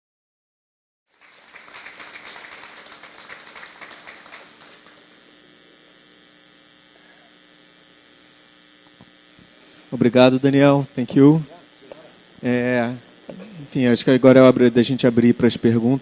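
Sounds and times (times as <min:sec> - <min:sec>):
audience applause: 0:01.1 - 0:05.2
electrical hum: 0:01.1 - 0:16.0.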